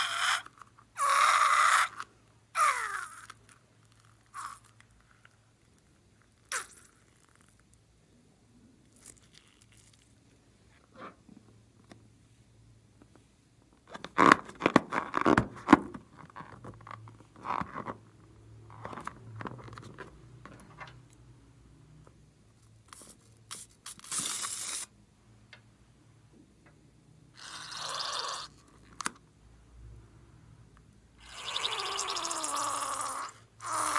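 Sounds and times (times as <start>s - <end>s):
short hissing bursts: 23.5s - 24.9s.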